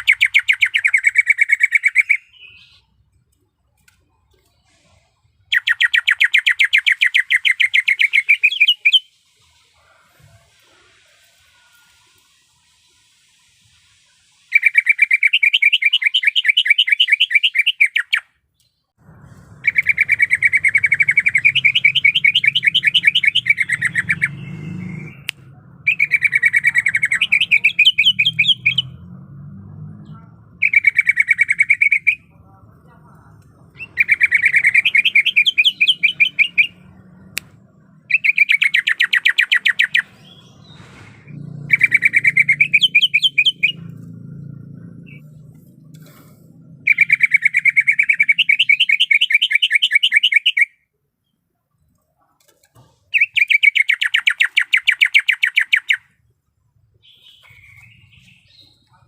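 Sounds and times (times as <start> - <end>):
bird singing trilled phrases: 0.0 - 3.2, 4.3 - 9.6, 14.4 - 18.9, 19.6 - 29.1, 29.9 - 32.6, 33.2 - 37.4, 38.0 - 40.8, 41.6 - 45.8, 46.8 - 51.4, 53.1 - 56.2, 57.0 - 59.0.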